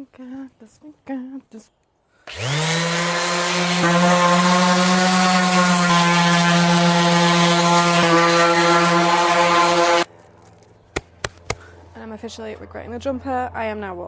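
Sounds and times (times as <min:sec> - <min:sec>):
electric sander whining: 0:02.3 - 0:10.1.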